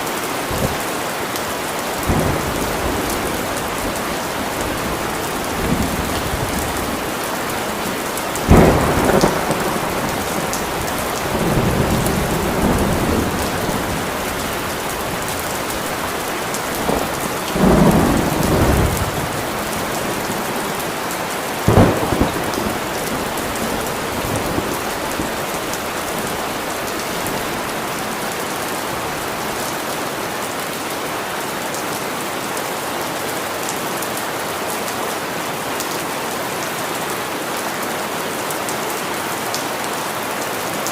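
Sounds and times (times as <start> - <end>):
steady rain: 0.0 - 40.9
thunder crashing and rumbling: 2.0 - 20.8, 21.6 - 28.0.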